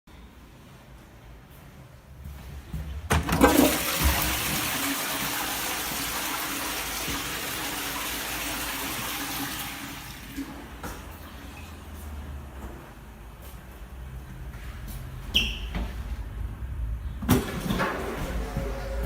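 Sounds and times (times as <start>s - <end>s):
toilet water rushing: 3.1s - 10.9s.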